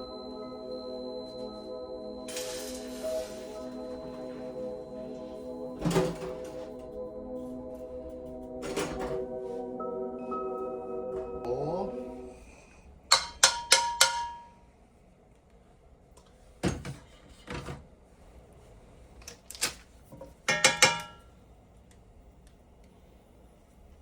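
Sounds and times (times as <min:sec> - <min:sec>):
metal cookware clinking: 0:13.1 - 0:14.6, 0:20.5 - 0:21.2.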